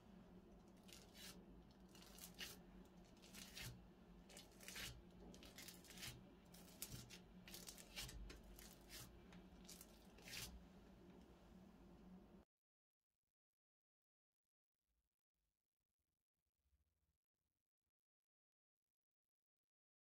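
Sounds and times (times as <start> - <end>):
crackly rustles of slime: 0.5 - 10.6.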